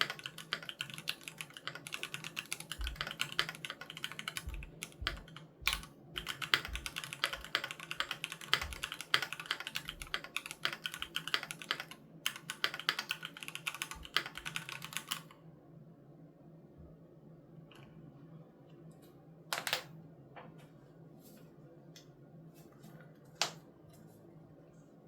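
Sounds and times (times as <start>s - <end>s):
mechanical keyboard typing: 0.0s - 15.3s, 19.5s - 19.9s.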